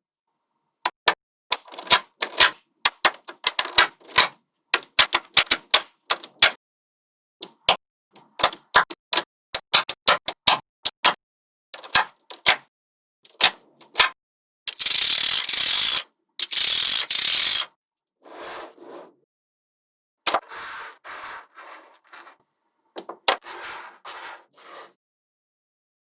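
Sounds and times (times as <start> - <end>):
magnetic balls clicking together: 0.9 - 6.6, 8.4 - 11.2, 11.8 - 12.6, 14.7 - 17.7.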